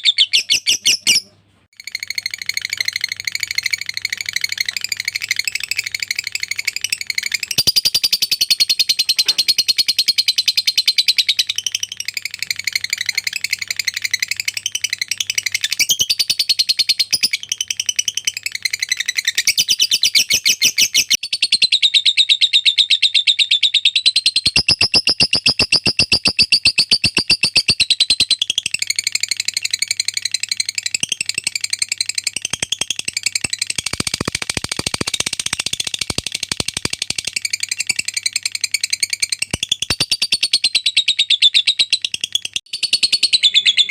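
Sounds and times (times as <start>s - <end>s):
bird chattering: 0.0s - 9.4s, 29.0s - 40.4s.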